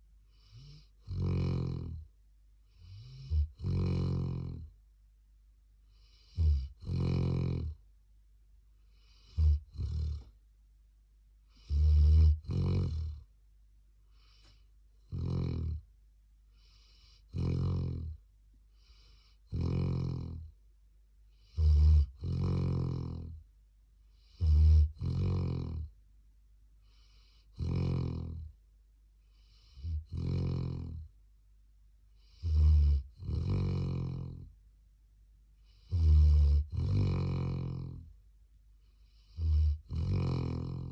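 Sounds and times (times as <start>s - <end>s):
dog snoring: 0.3s - 2.1s, 2.7s - 4.8s, 5.9s - 7.8s, 8.9s - 10.4s, 11.5s - 13.3s, 14.1s - 15.9s, 16.5s - 20.6s, 21.3s - 23.4s, 24.1s - 26.0s, 26.8s - 28.6s, 29.3s - 31.1s, 32.2s - 34.6s, 35.6s - 38.1s, 38.9s - 40.9s.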